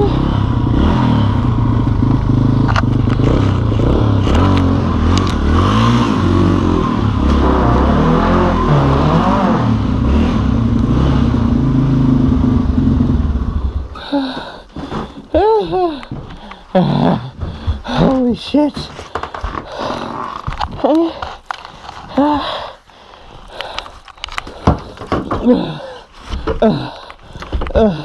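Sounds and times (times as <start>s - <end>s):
motorcycle engine revving: 0.0s - 14.0s
clatter: 1.3s - 6.2s.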